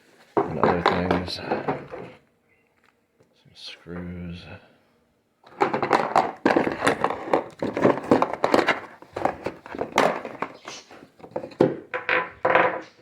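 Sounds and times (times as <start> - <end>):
packaging rustling: 5.5 - 11.7.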